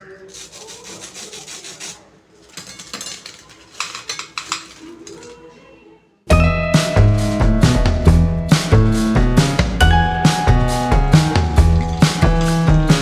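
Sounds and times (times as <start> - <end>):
utensils scraping and clinking dishes: 0.0 - 5.7, 11.2 - 13.0
loud music with drum beat: 6.3 - 13.0.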